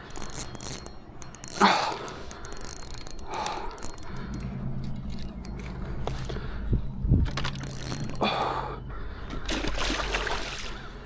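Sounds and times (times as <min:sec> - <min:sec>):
fishing reel cranking: 0:00.0 - 0:11.0
low steady hum: 0:00.0 - 0:11.0.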